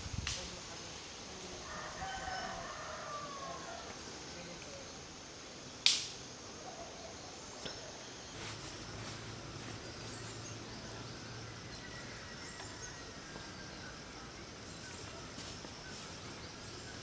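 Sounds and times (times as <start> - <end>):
background hiss: 0.0 - 17.0
distant insects: 0.0 - 17.0.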